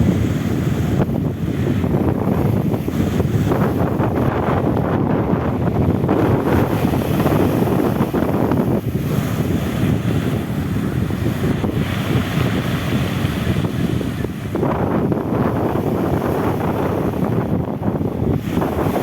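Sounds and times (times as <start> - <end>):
ocean surf washing ashore: 0.0 - 19.0
wind buffeting microphone: 0.0 - 19.0.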